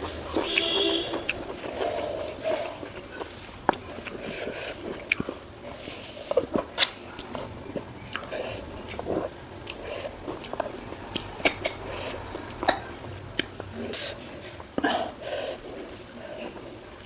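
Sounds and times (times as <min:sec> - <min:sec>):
person biting and chewing food: 0:06.0 - 0:14.2.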